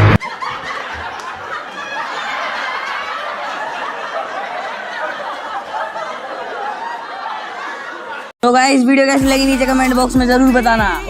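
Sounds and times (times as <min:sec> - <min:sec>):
people laughing: 0:00.0 - 0:08.3
music: 0:09.2 - 0:11.0.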